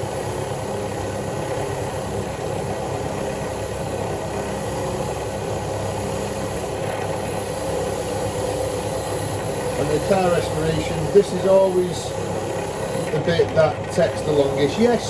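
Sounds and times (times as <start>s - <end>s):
wire wheel brushing metal: 8.2s - 15.0s.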